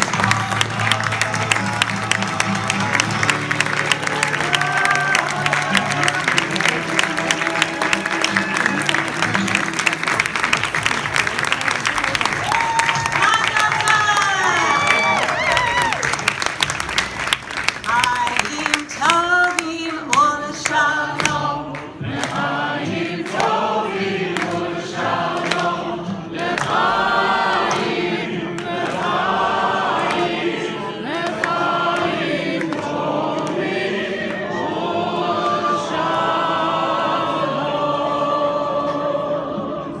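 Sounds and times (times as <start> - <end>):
choir singing: 0.0 - 11.3, 20.4 - 40.0
hand clapping: 0.0 - 34.4.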